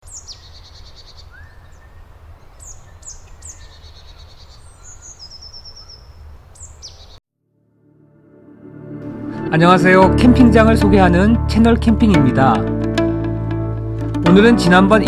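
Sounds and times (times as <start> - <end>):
small birds chirping: 0.0 - 7.2.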